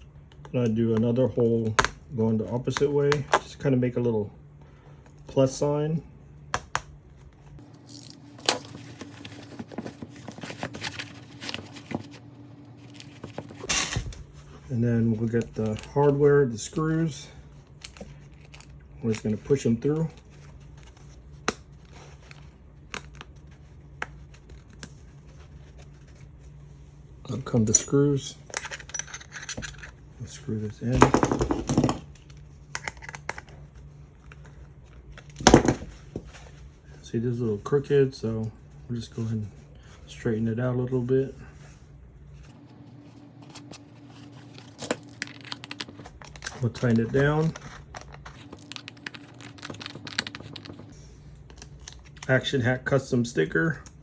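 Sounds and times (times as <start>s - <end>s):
hands rustling small parts: 7.6s - 14.0s, 27.4s - 30.0s, 42.5s - 52.3s.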